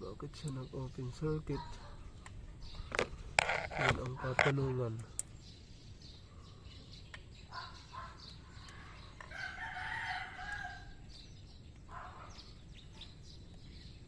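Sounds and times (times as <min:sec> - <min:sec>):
rooster crowing: 0:09.3 - 0:11.0.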